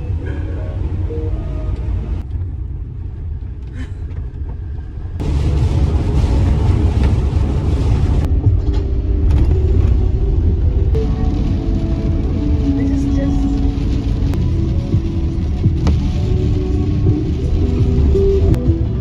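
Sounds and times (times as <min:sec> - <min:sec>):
van engine and road rumble: 0:00.0 - 0:19.0
road and tyre hiss: 0:05.2 - 0:08.3.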